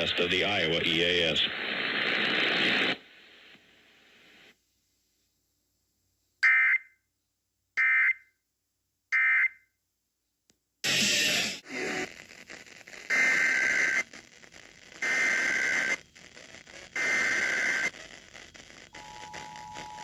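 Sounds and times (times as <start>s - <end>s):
radio static hiss: 0.0s - 4.6s, 10.9s - 20.0s.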